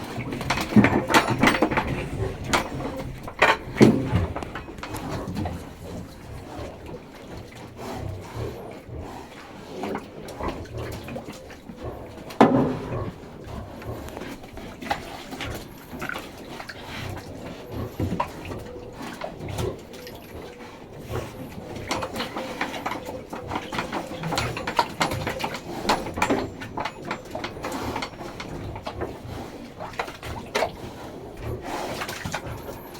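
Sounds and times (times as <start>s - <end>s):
pigs grunting: 0.0s - 32.9s.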